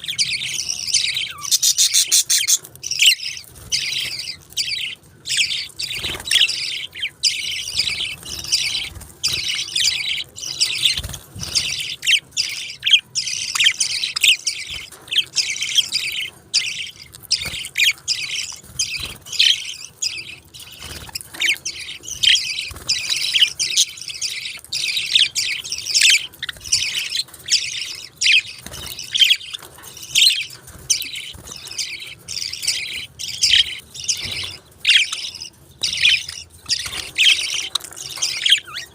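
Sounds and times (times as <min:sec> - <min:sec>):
budgerigars chirping and chattering: 0:00.0 - 0:38.9.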